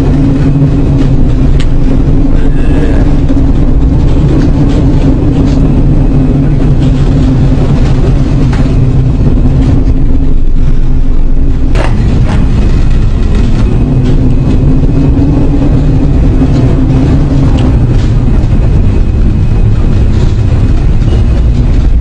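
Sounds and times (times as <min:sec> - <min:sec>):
low-pitched droning hum: 0:00.0 - 0:22.0.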